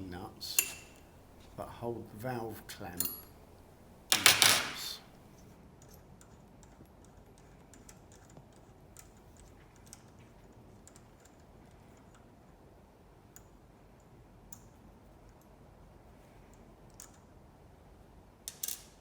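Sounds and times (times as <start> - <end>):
wrench clicking on metal nuts: 0.5 - 1.6, 2.7 - 5.2.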